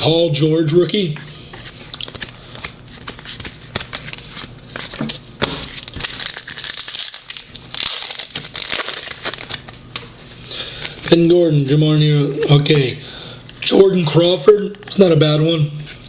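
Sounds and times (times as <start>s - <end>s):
foil wrapper crinkling and tearing: 1.9s - 9.8s.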